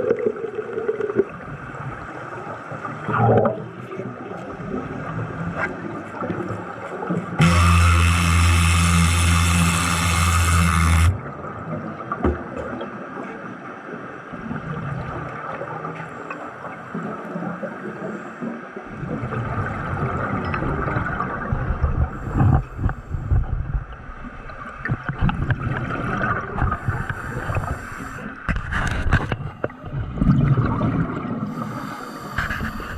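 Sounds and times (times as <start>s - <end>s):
water gurgling and bubbling: 0.0s - 3.9s, 7.4s - 12.1s, 18.9s - 32.9s.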